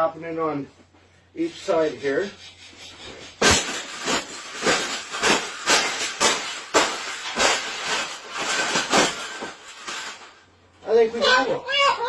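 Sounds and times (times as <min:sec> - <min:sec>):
wire cage crunching and rattling: 0:03.0 - 0:11.4.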